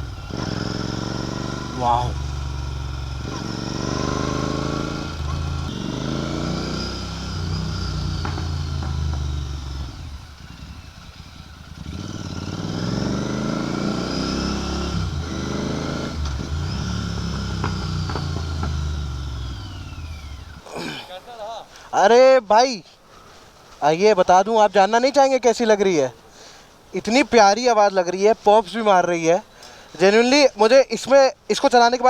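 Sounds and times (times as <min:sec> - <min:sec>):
motorcycle engine revving: 0:00.0 - 0:21.0
exhaust pops: 0:07.5 - 0:10.0, 0:16.1 - 0:20.6.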